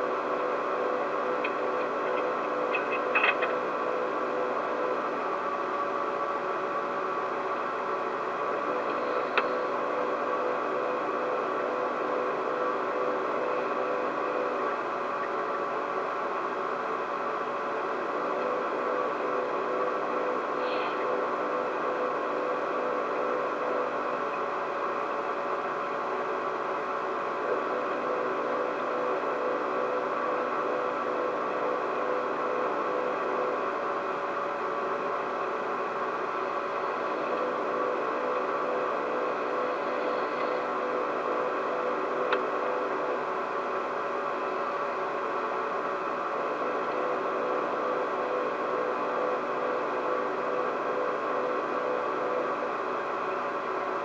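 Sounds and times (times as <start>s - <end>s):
machine-like room hum and hiss: 0.0s - 54.0s
faint tick: 8.9s - 9.5s.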